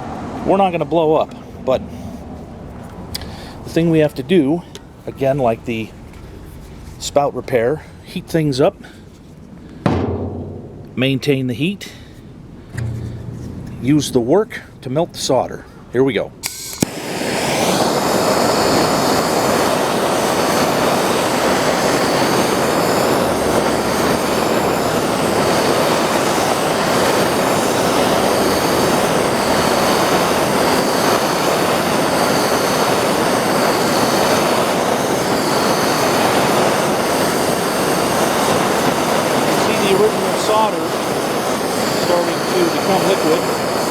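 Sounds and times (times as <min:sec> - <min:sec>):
gas torch hissing: 0:16.4 - 0:43.9.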